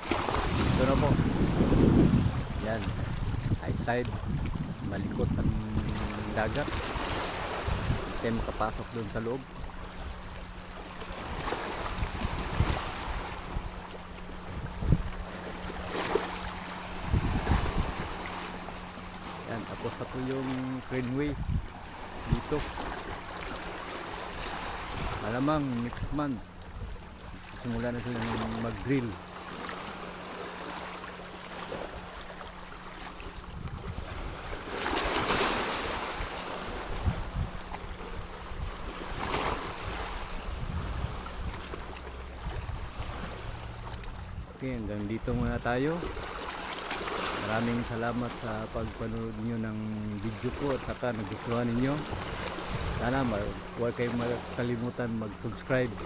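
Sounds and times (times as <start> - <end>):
wind buffeting microphone: 0.0 - 19.8, 21.2 - 23.2, 24.4 - 28.8, 33.4 - 44.6, 45.2 - 46.2, 51.8 - 54.0
sea waves washing in: 0.0 - 56.0.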